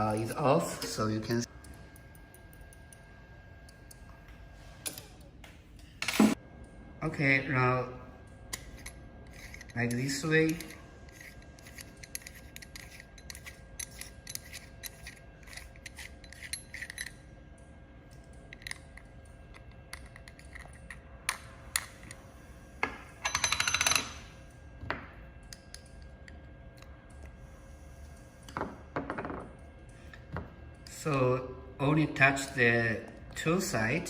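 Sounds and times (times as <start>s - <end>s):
small metal parts clicking: 8.5s - 17.2s.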